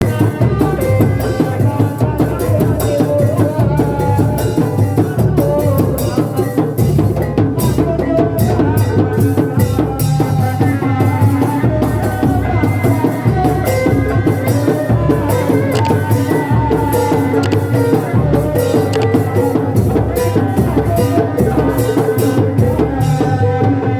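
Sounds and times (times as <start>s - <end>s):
loud drum beat: 0.0s - 23.9s.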